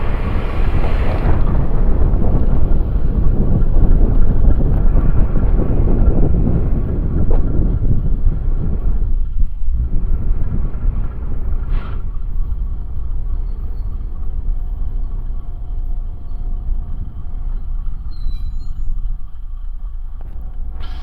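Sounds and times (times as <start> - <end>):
diesel railcar rumbling: 0.0 - 21.0
brief hiss: 20.7 - 21.0.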